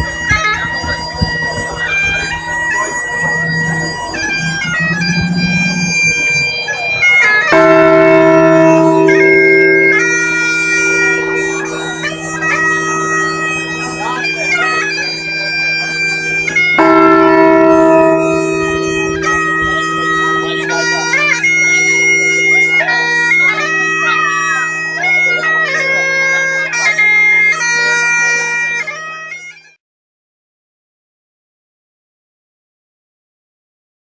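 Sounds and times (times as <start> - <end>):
wind instrument melody over drones: 0.0 - 29.6.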